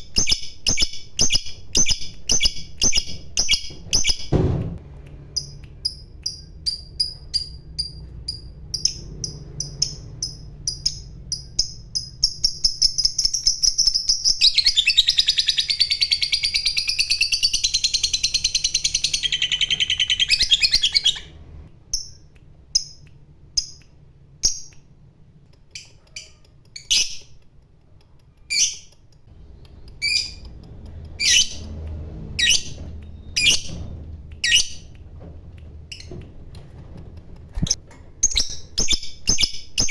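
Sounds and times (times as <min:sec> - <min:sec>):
lovebird chirping and trilling: 0:00.0 - 0:04.3, 0:05.3 - 0:23.0, 0:25.7 - 0:27.4, 0:28.4 - 0:29.0, 0:29.7 - 0:31.8, 0:32.4 - 0:33.8, 0:34.4 - 0:34.9, 0:37.6 - 0:39.9.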